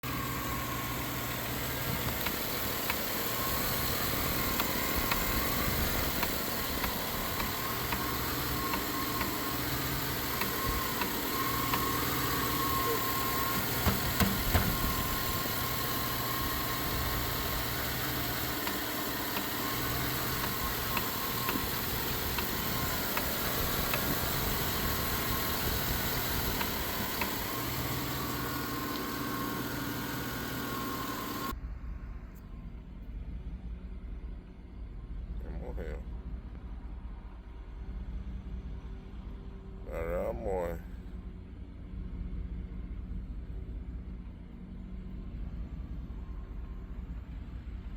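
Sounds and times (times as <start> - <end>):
car engine idling unevenly: 0.0 - 31.5
engine ticking noise: 0.0 - 31.5.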